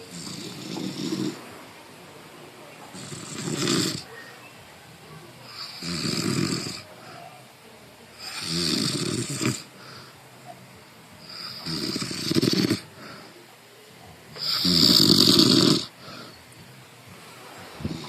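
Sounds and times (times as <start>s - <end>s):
person snoring: 0.0s - 1.4s, 3.0s - 4.1s, 5.5s - 6.8s, 8.2s - 9.7s, 11.2s - 13.3s, 14.4s - 16.3s
quiet breathing: 0.0s - 18.0s.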